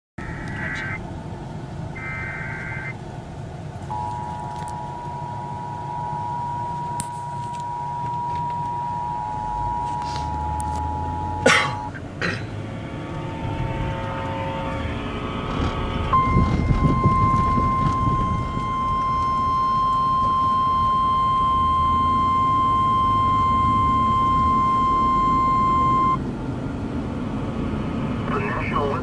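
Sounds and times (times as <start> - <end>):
hissy radio noise: 0.2 - 1.0, 2.0 - 3.0, 28.3 - 29.0
steady warning alarm tone: 2.0 - 3.0, 3.9 - 12.0, 12.6 - 26.2
warbling data burst: 2.0 - 3.0
two-tone alert signal: 3.9 - 11.9, 16.1 - 26.2.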